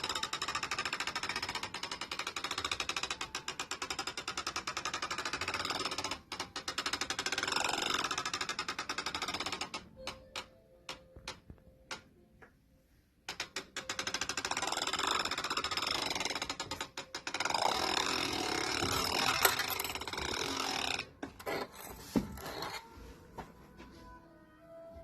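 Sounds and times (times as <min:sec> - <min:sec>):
rapid mechanical clicking: 0:00.0 - 0:10.4, 0:13.3 - 0:21.1.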